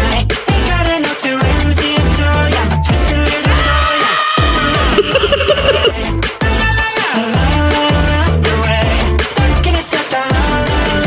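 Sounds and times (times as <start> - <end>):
sliding heavy bass: 0.0 - 3.9, 4.5 - 6.8, 7.4 - 9.8
electronic pop song: 0.0 - 11.0.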